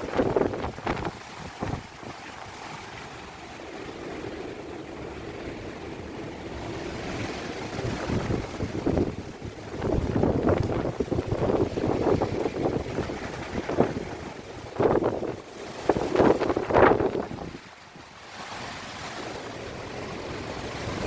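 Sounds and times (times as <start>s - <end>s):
strong wind buffeting microphone: 0.0s - 2.6s, 3.2s - 21.0s.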